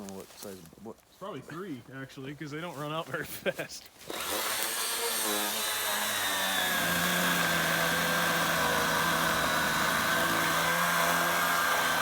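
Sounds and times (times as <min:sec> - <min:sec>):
battery chainsaw cutting wood: 0:04.0 - 0:12.0.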